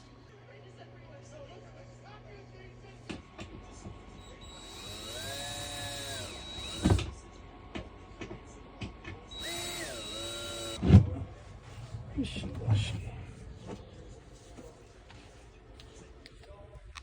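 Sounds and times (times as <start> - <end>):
power drill driving screws: 4.2 - 7.1, 9.3 - 10.8.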